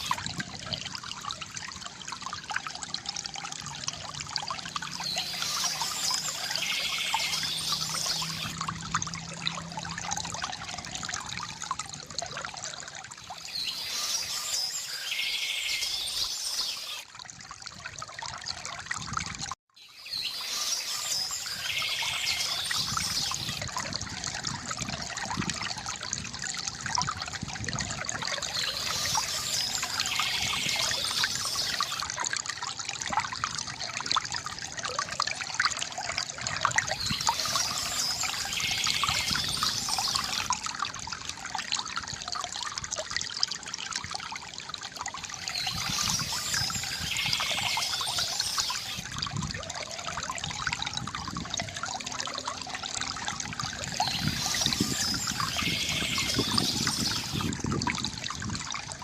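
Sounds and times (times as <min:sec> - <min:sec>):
stream water trickling: 0:00.0 - 0:59.0
high-pitched birdsong: 0:04.7 - 0:08.6, 0:13.2 - 0:17.0, 0:19.8 - 0:23.7, 0:28.3 - 0:32.1, 0:36.8 - 0:40.5, 0:45.4 - 0:49.1, 0:53.9 - 0:57.6.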